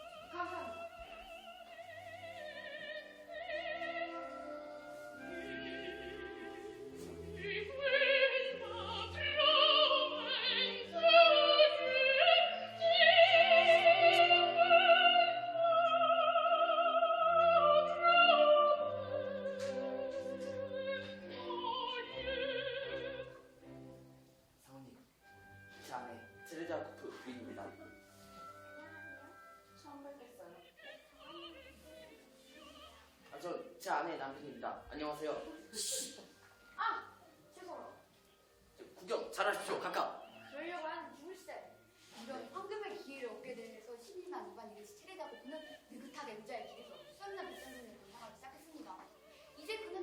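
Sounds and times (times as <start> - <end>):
orchestral accompaniment: 0.0 - 16.4, 17.1 - 50.0
opera singer with vibrato: 0.0 - 23.5, 30.5 - 33.2.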